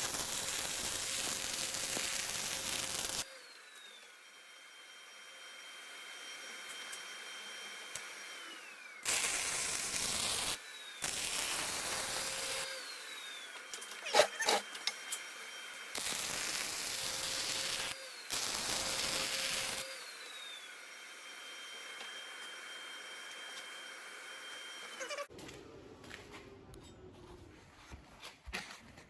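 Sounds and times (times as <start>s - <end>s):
arc welding crackling hiss: 0.0s - 3.3s, 9.0s - 12.7s, 15.9s - 20.0s.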